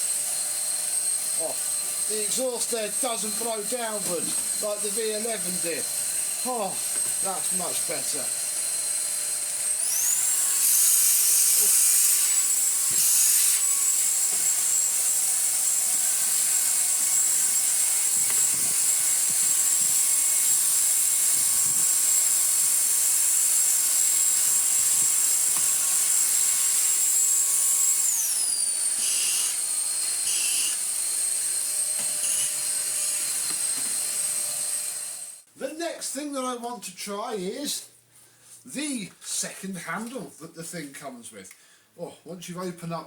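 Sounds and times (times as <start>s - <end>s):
vacuum cleaner motor whine: 17.0s - 20.1s.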